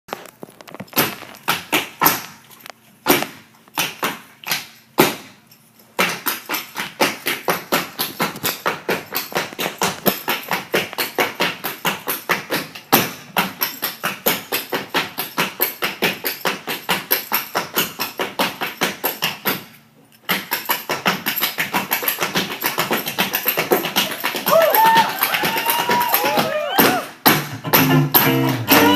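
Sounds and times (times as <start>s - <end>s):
tap shoes striking floor: 6.0s - 19.7s, 20.3s - 28.9s.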